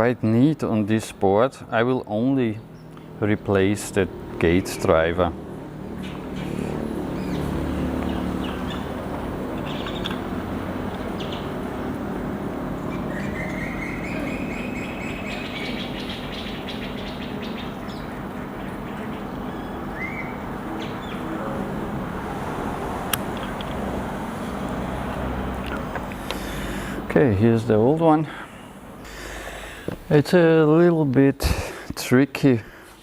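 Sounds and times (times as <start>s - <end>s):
steady rushing hum: 0.0s - 33.0s
bird chirping: 5.8s - 10.3s, 11.0s - 11.7s, 12.8s - 21.4s.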